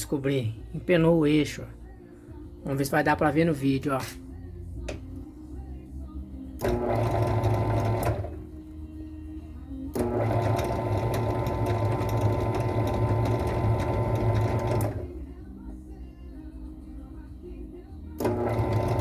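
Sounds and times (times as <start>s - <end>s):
electric saw motor running: 6.6s - 8.4s, 10.0s - 15.2s, 18.2s - 19.0s.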